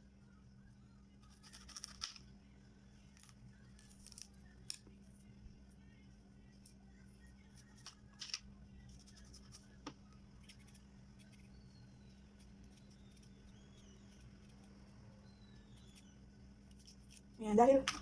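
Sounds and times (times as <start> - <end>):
steady low hum: 0.0 - 18.0
knife scraping ginger: 16.7 - 17.3.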